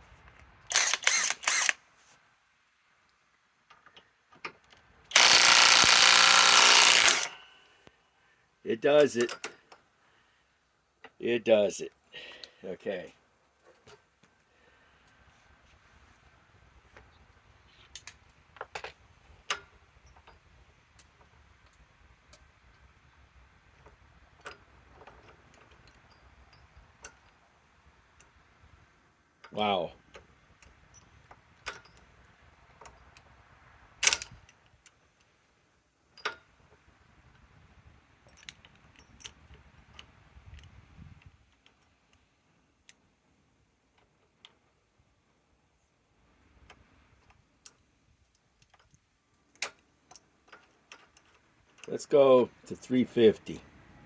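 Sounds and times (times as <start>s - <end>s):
low steady hiss: 0.0s - 54.0s
impact wrench hammering: 5.1s - 7.5s.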